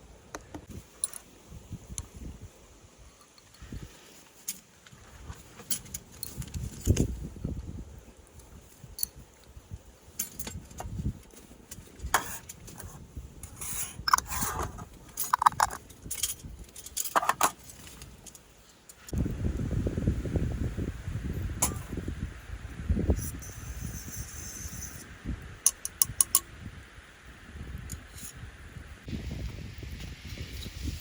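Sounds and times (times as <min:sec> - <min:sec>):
metal cutlery clinking and rattling: 0:13.6 - 0:18.0.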